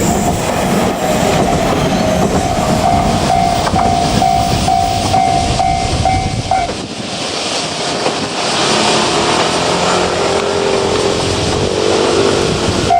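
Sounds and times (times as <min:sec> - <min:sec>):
electric train passing: 0:00.0 - 0:12.9
level crossing warning bell: 0:01.1 - 0:06.7.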